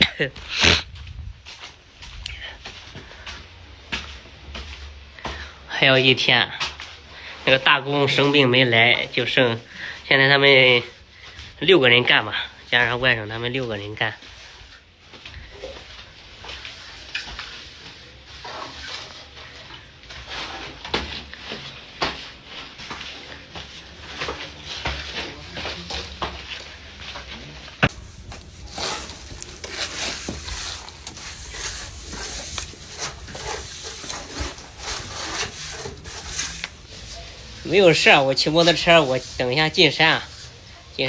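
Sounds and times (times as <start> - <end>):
hand tools scraping and tapping: 14.5 - 40.6.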